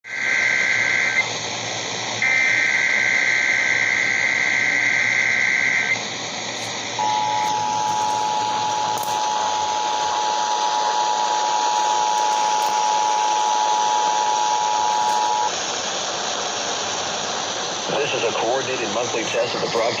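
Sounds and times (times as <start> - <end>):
shrill electronic data bursts: 0.0 - 1.3, 2.2 - 15.7, 17.9 - 20.0
broadcast hiss: 0.0 - 20.0
two-tone attention signal: 7.0 - 10.1.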